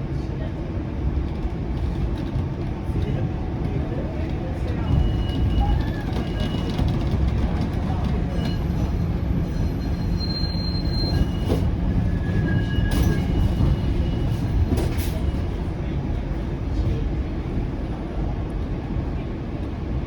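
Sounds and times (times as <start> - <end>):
streetcar rumbling: 0.0 - 20.0
wheel squeals on rails: 4.6 - 15.6.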